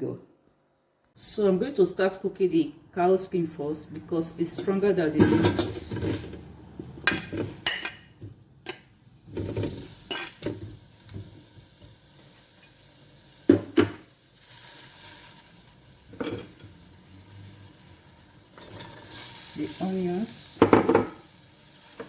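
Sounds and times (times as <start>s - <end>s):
pot and utensils knocking: 5.2s - 8.8s, 13.5s - 14.0s, 20.6s - 21.2s
faint sizzle: 5.4s - 22.0s.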